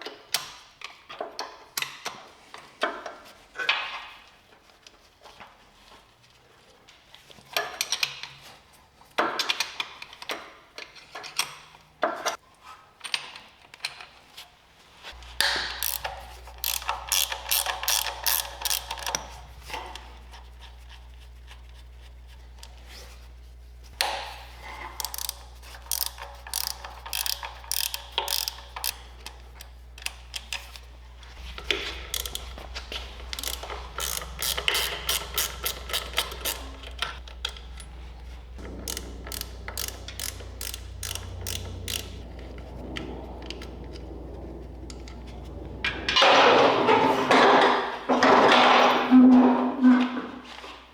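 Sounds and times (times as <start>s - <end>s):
ratchet clicking: 15.2s - 19.8s, 24.0s - 44.1s
steady low hum: 15.2s - 47.0s.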